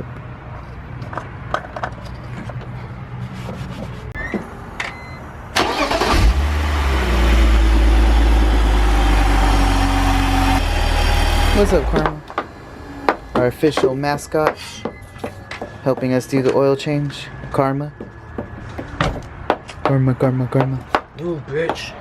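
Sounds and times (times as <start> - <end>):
short beeps: 4.2 - 5.2
car engine starting and idling: 4.5 - 14.4.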